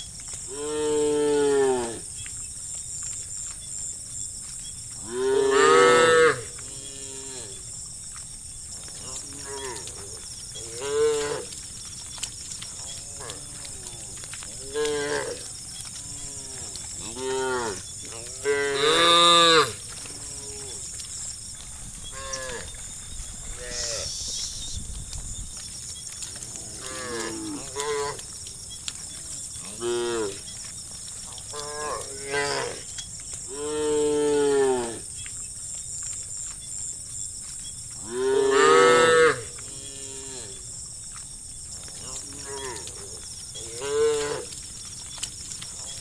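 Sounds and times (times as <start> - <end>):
cows mooing: 5.0 - 7.6, 9.0 - 11.6, 12.8 - 21.0, 22.1 - 22.7, 26.4 - 28.3, 29.1 - 30.5, 31.4 - 32.9, 33.5 - 35.1, 38.0 - 40.6, 42.0 - 44.6.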